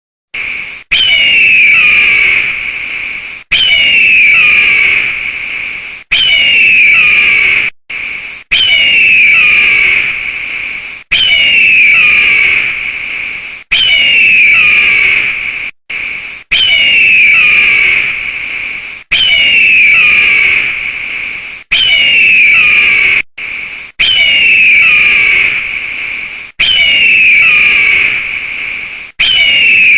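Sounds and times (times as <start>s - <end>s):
cartoon creature screech: 0.4s - 2.8s, 3.5s - 5.4s, 6.1s - 10.4s, 11.1s - 13.0s, 13.7s - 18.4s, 19.1s - 21.0s, 21.7s - 25.8s, 26.6s - 28.5s, 29.2s - 29.9s.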